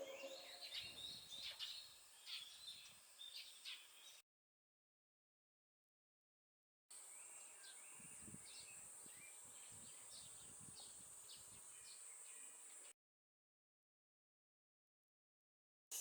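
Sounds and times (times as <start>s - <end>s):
bird chirps: 0.0s - 4.2s.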